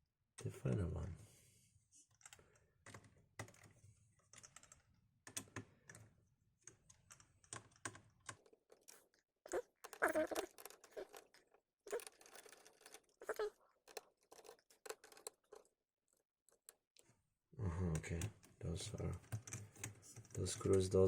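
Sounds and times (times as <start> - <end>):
small metal clatter: 8.3 - 15.7.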